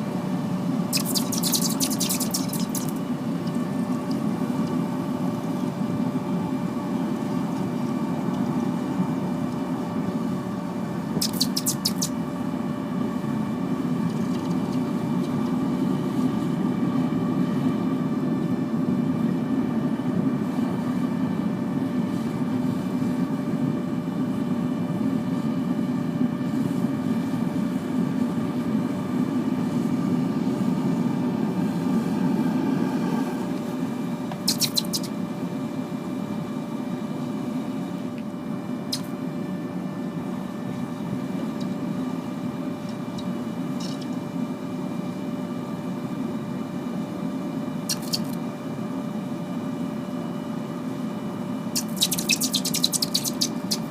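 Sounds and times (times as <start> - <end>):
steady hum: 0.0 - 53.9
sharp crackles: 1.0 - 3.0, 51.8 - 53.9.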